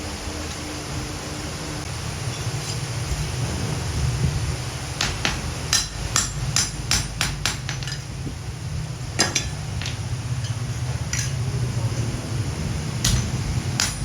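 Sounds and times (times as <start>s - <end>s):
steady low hum: 0.0s - 14.0s
hammer striking steel: 5.0s - 8.1s, 9.2s - 11.4s, 13.0s - 14.0s.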